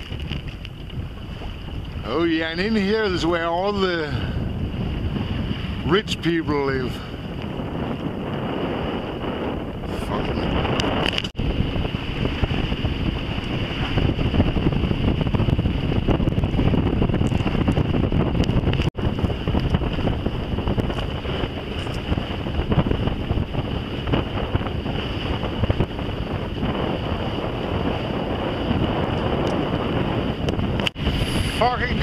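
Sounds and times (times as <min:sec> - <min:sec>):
water rushing along hull: 0:00.0 - 0:32.0
wind buffeting microphone: 0:00.0 - 0:32.0.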